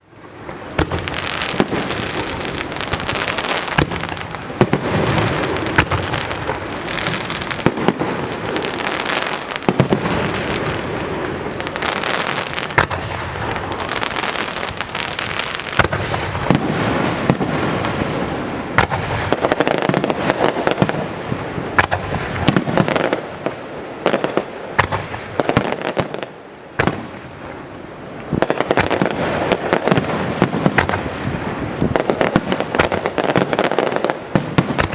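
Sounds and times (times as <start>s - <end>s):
fireworks bursting: 0.0s - 34.9s
fireworks crackle: 0.0s - 34.9s.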